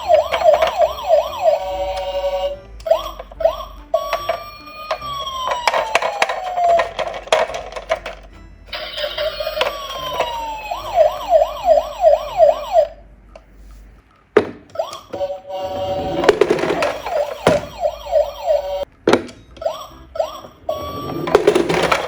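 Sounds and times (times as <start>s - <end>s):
electronic toy sirens: 0.0s - 13.1s, 14.7s - 18.9s, 19.6s - 22.0s
plastic clicks and clatters: 0.1s - 1.0s, 2.8s - 8.3s.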